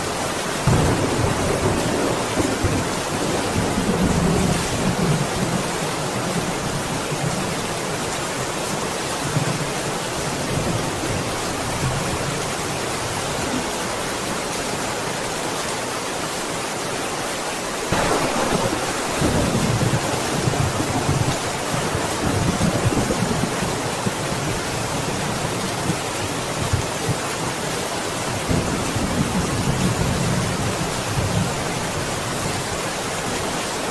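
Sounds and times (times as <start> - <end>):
heavy rain: 0.0 - 33.9
low rolling thunder: 0.6 - 7.5, 17.9 - 27.2.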